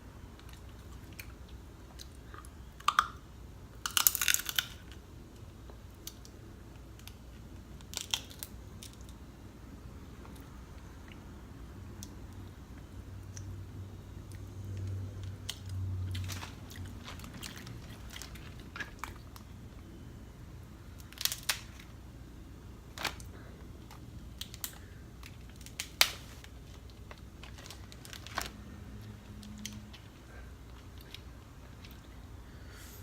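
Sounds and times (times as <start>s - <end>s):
crab shells cracking: 3.8s - 5.0s, 7.8s - 9.0s, 21.0s - 21.9s.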